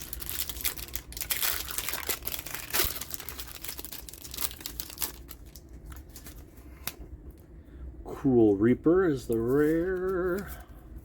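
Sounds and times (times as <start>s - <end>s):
wrapper crinkling: 0.0s - 6.5s.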